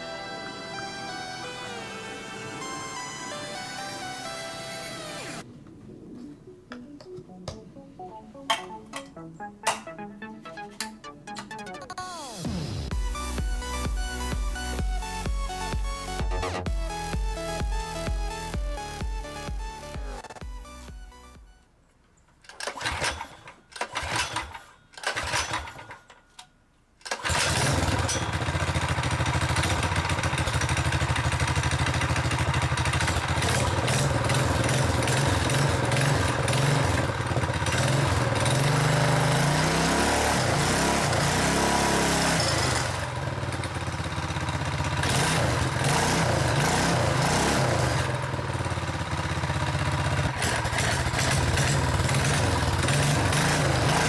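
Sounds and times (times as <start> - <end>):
mini motorcycle engine running: 22.5 - 26.0, 27.1 - 54.0.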